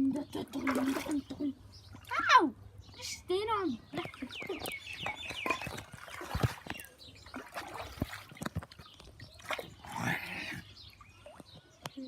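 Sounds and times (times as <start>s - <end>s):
bird chirping: 0.0s - 12.0s
light splashing: 4.0s - 9.9s.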